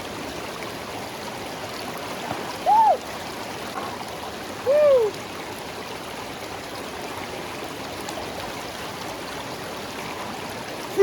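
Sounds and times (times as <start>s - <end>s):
river water flowing: 0.0s - 11.0s.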